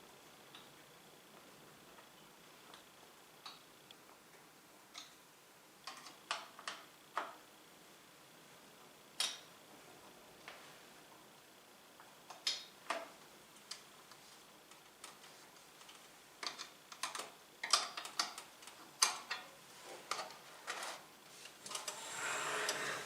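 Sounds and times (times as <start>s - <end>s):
rustling and scraping: 19.7s - 23.0s.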